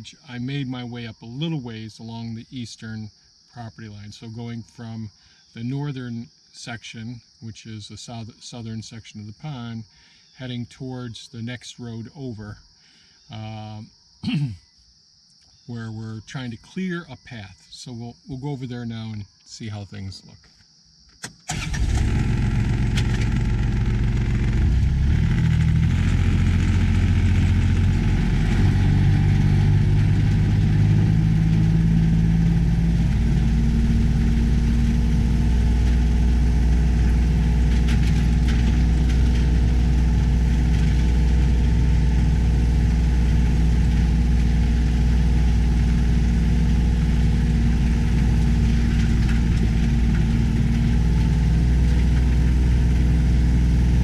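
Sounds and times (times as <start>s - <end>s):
vehicle engine running: 21.5s - 54.0s.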